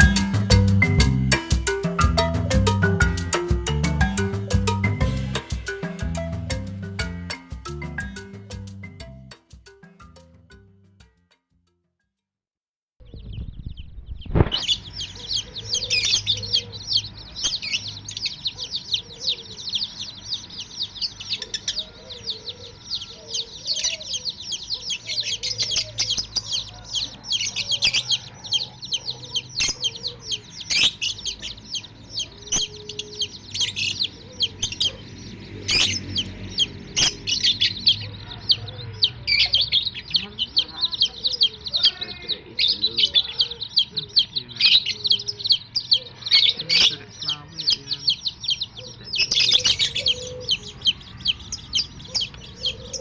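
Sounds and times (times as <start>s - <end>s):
baby chicks peeping: 0.0s - 10.8s, 13.0s - 53.0s
lower bird calls: 13.0s - 53.0s.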